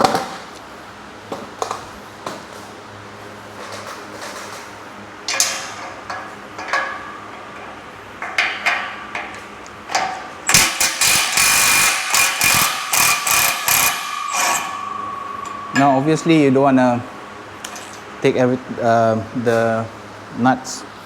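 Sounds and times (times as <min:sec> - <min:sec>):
metal knocks and clicks: 0:05.3 - 0:11.4, 0:12.0 - 0:18.2
impact wrench hammering: 0:05.3 - 0:18.2.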